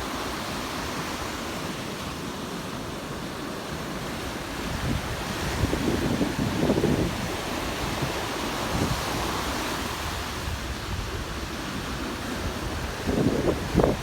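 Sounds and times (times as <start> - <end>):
ocean surf breaking on beach: 0.0 - 14.0
wind buffeting microphone: 4.1 - 14.0.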